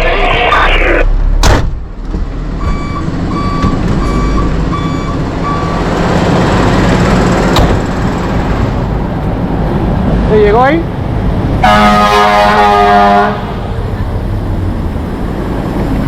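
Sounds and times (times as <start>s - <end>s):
truck reversing alarm beeps: 2.6s - 5.9s.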